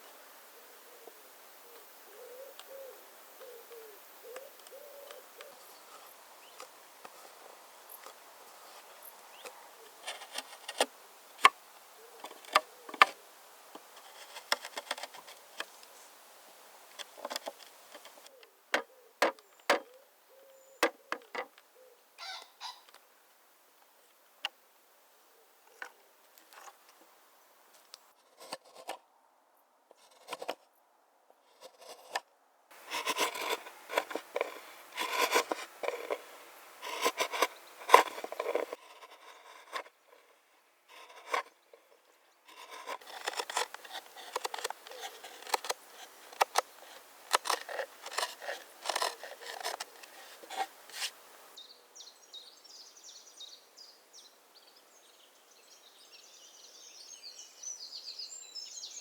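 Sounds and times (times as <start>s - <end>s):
knife scraping and shaving: 9.9s - 10.9s, 13.9s - 15.7s, 31.6s - 32.2s, 32.8s - 40.0s, 42.5s - 51.2s
scattered ticks: 32.8s - 38.8s, 42.5s - 51.2s.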